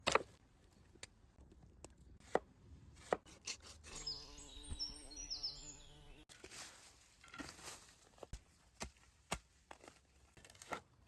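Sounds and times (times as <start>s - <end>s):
birds chirping: 3.9s - 6.2s.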